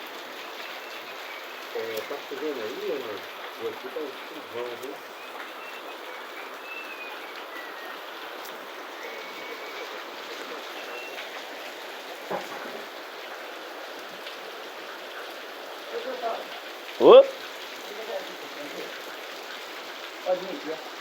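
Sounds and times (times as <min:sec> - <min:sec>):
heavy rain: 0:00.0 - 0:21.0.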